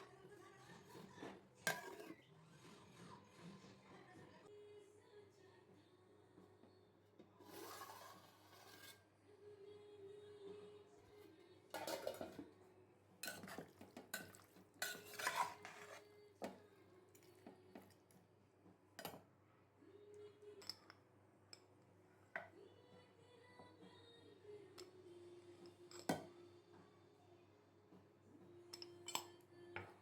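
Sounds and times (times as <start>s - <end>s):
spoon clinking against a dish: 1.7s - 2.2s, 11.7s - 12.5s, 13.2s - 16.6s, 20.6s - 21.7s, 25.7s - 26.3s, 28.7s - 30.0s.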